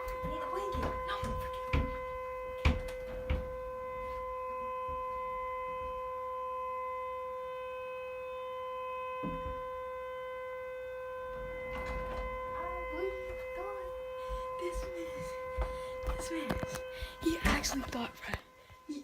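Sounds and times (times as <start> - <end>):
tornado siren wail: 0.0 - 19.0.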